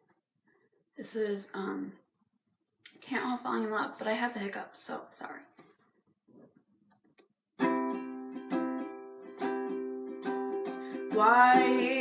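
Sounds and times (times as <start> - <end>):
ukulele strumming: 7.6 - 12.0.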